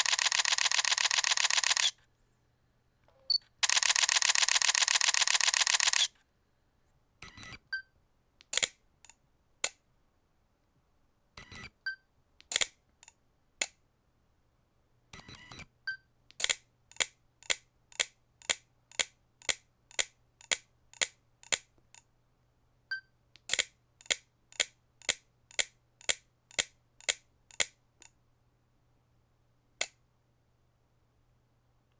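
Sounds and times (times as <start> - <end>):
camera shutter clicks: 0.0 - 1.9, 3.6 - 6.1, 8.5 - 8.7, 12.5 - 12.7, 16.4 - 21.6, 23.4 - 27.7.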